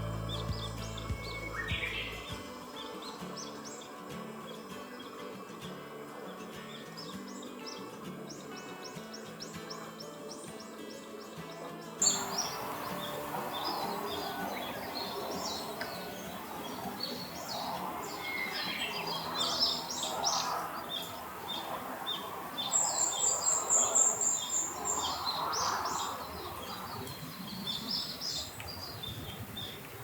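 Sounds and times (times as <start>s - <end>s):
bird high repeated notes: 0.0s - 4.0s
small birds chirping: 0.0s - 30.0s.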